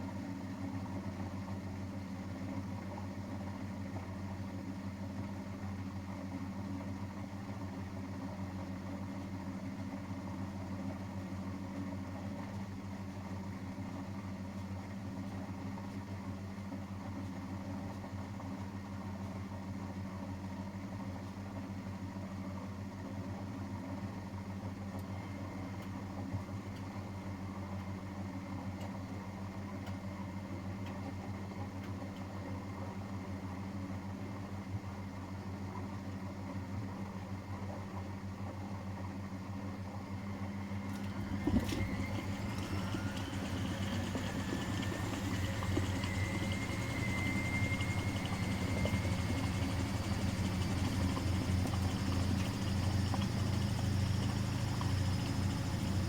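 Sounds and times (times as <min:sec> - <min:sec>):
washing machine motor hum: 0:39.0 - 0:56.0
motor whine rising in pitch: 0:40.8 - 0:56.0.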